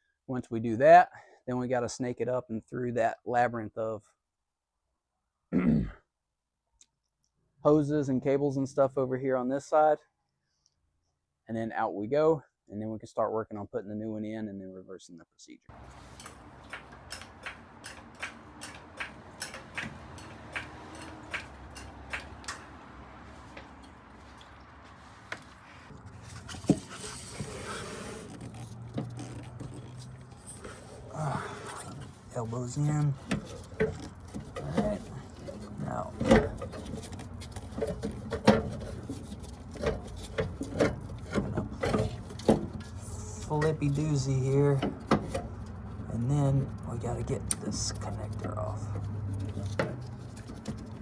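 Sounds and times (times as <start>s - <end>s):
tools knocking and clicking: 16.1s - 22.9s.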